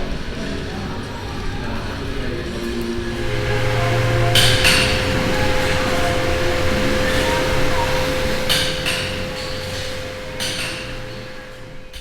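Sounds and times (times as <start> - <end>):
steady hum: 0.0 - 12.0
sharp metallic knocks: 3.1 - 12.0.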